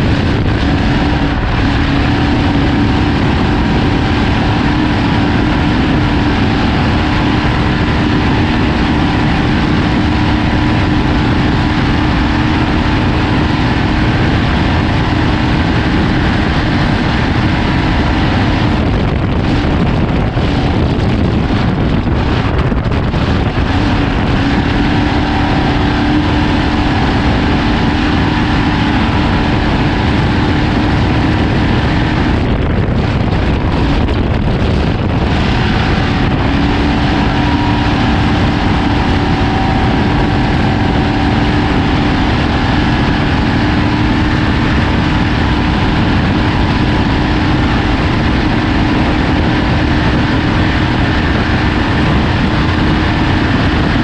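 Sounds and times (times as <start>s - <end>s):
truck engine drone: 0.0s - 54.0s
wind and terrain noise: 0.0s - 54.0s.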